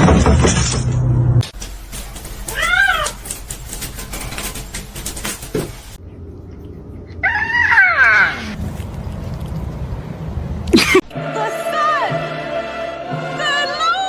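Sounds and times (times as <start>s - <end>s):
cat meowing: 2.5s - 3.2s, 7.1s - 8.6s.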